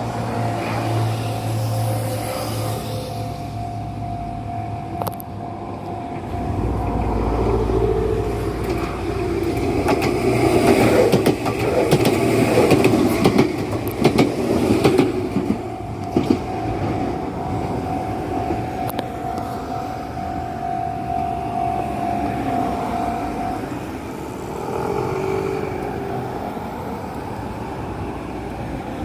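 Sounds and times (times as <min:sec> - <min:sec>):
level-crossing warning tone: 0:00.0 - 0:28.1
electric train passing: 0:00.0 - 0:29.0
train wheel clacks: 0:08.6 - 0:16.9.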